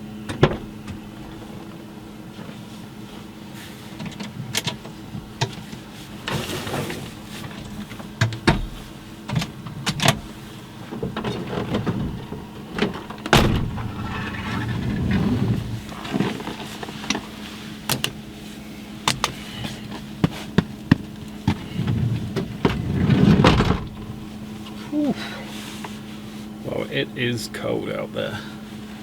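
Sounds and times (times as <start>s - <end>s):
steady low hum: 7.0s - 29.0s
knocks clicks and thuds: 10.9s - 17.3s, 17.9s - 18.2s, 19.1s - 24.4s.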